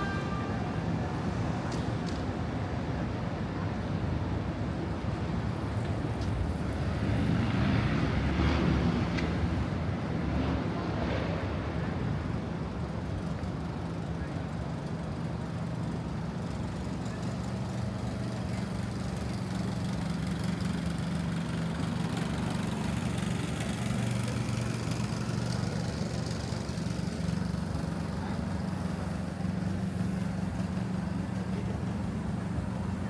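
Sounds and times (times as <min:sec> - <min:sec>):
city street noise: 0:00.0 - 0:33.0
vehicle engine idling: 0:13.1 - 0:33.0.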